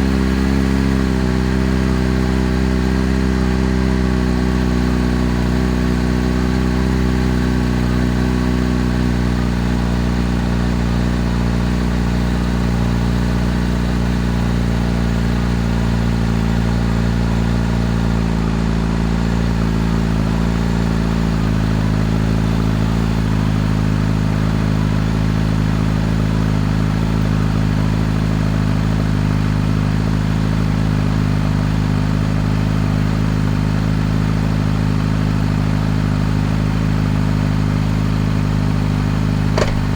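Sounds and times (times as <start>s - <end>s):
motorcycle engine idling: 38.3s - 39.9s.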